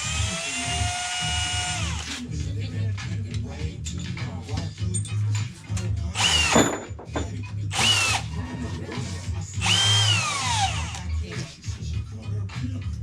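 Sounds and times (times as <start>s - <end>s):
power tool whine: 0.0s - 2.2s, 6.2s - 6.6s, 7.8s - 8.2s, 9.6s - 11.0s
bass-heavy music: 0.0s - 13.0s.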